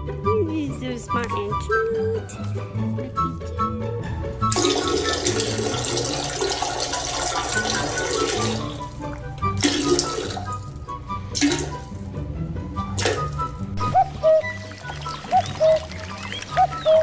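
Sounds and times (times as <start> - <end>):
background music: 0.0 - 17.0
water rushing: 4.5 - 10.8, 14.4 - 17.0.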